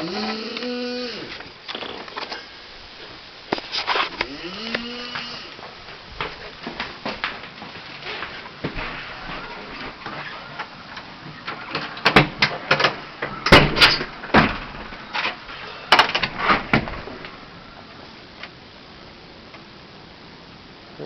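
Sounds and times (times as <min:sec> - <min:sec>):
sharp knocks and bangs: 0:12.0 - 0:15.0.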